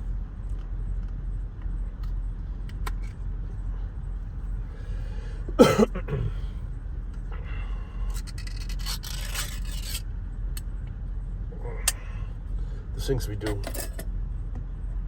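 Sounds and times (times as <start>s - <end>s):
van engine idling: 0.0s - 15.0s
metal lid scraping: 8.2s - 10.0s.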